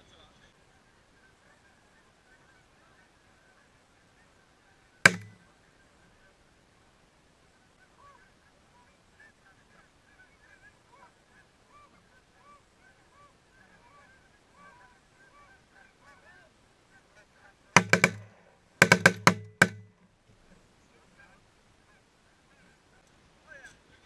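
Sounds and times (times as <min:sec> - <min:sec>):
shotgun shots: 0:05.1 - 0:05.4, 0:17.8 - 0:19.9
geese honking: 0:07.8 - 0:18.9, 0:20.9 - 0:23.6.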